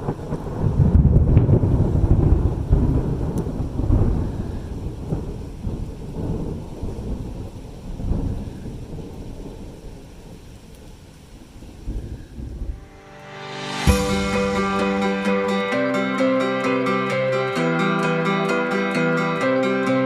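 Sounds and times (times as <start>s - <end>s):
rain: 0.0s - 15.1s
thunder rumbling: 0.0s - 15.1s.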